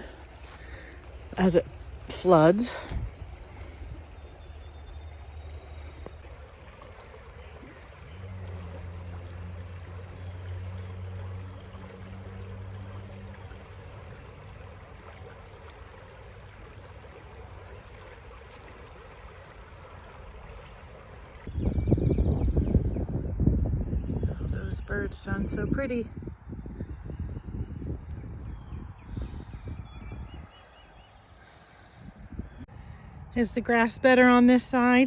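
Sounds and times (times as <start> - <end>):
creek flowing over stones: 0.0 - 21.5
low steady hum: 0.0 - 21.5.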